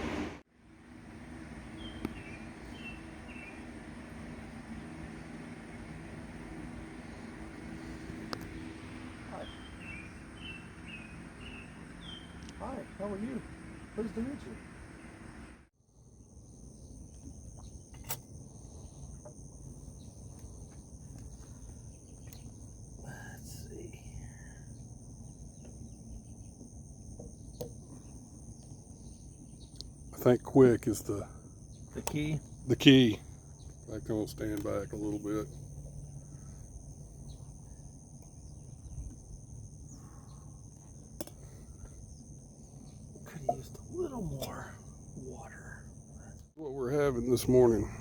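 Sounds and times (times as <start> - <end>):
low rumble: 0.0 - 0.4
low outdoor rumble: 0.0 - 48.0
insects trilling: 0.8 - 48.0.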